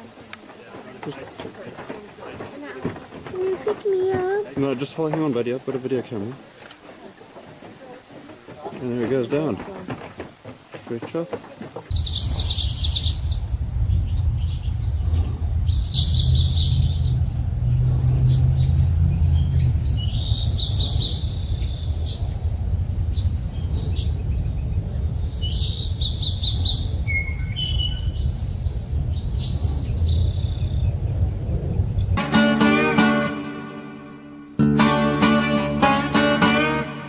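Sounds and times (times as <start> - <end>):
small birds chirping: 0.0 - 32.2
steady low rumble: 11.9 - 32.2.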